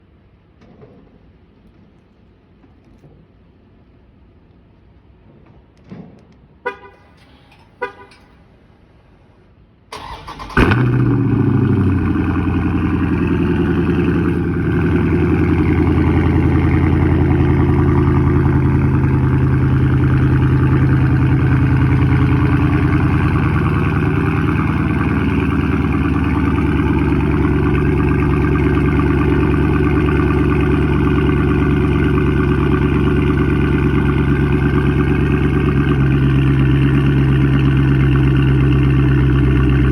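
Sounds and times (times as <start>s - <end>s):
engine cranking and starting: 9.9s - 12.4s
deep engine idle: 10.0s - 39.9s.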